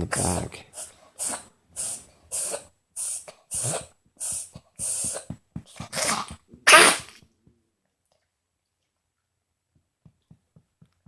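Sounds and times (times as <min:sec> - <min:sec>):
small dog coughing and dry heaving: 0:00.8 - 0:07.1.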